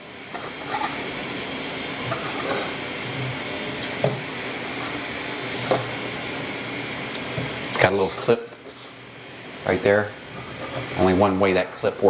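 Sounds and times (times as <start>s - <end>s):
three d printer fans whirring: 0.0s - 12.0s.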